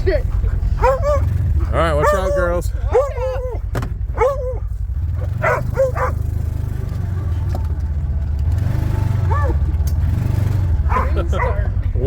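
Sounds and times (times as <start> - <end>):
utility vehicle engine running: 0.0 - 12.0
dogs barking: 0.2 - 6.9, 9.1 - 9.8, 10.6 - 12.0.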